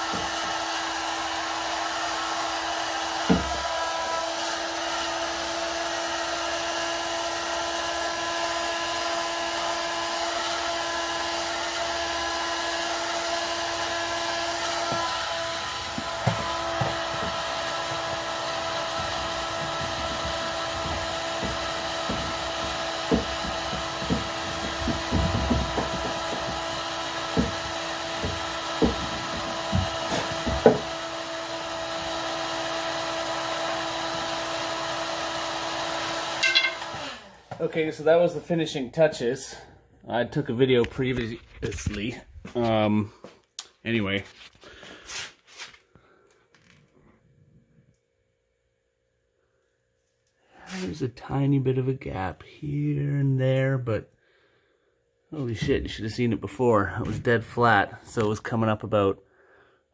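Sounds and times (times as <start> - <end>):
heat gun whining: 0.0 - 37.6
knocks and bumps: 14.7 - 31.2, 55.4 - 56.2.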